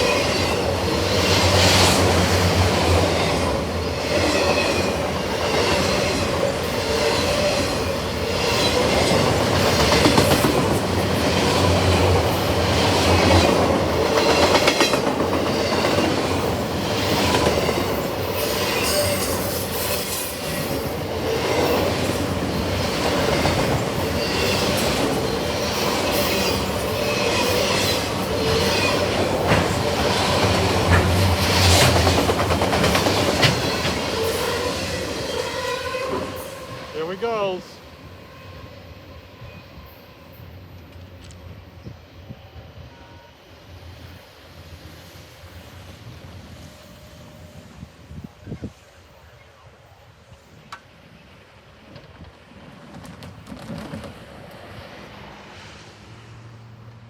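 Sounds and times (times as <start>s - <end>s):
train wheels on rails: 0.0s - 57.0s
wheels clicking over rail joints: 21.6s - 34.5s.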